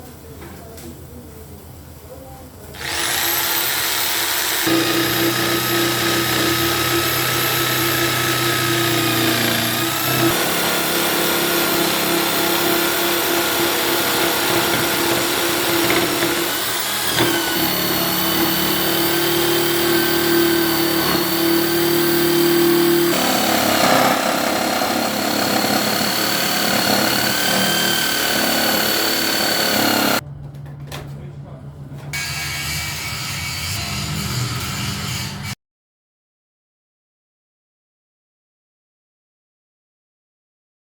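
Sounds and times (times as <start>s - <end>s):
power tool motor whine: 2.8s - 30.2s.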